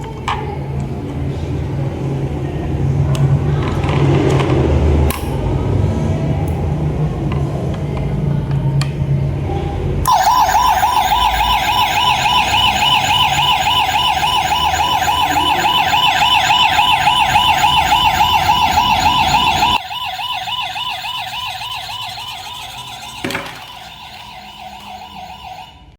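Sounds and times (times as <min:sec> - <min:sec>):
electronic warbling toy siren: 0:10.1 - 0:25.9.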